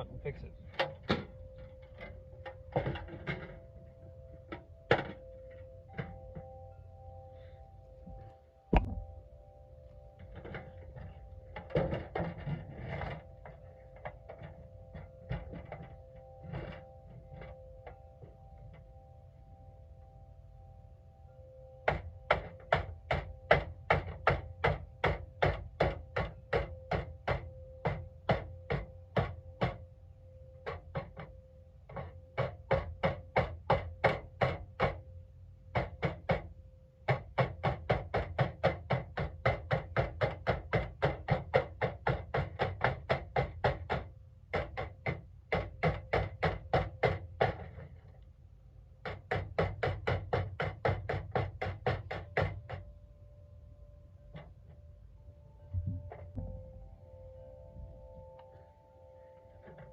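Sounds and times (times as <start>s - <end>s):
hammer striking metal toolbox: 0.7s - 3.6s, 8.8s - 9.1s, 10.3s - 16.8s.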